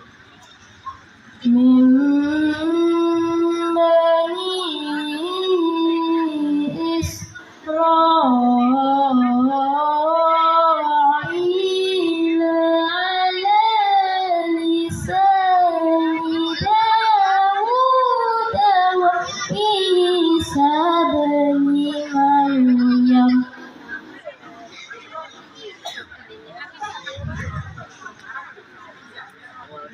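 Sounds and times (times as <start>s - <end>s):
child reciting melodically: 1.4s - 23.6s.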